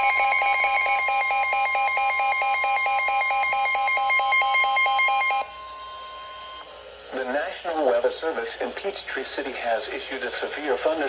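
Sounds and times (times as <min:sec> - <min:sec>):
pulsing electronic alarm tone: 0:00.0 - 0:06.7.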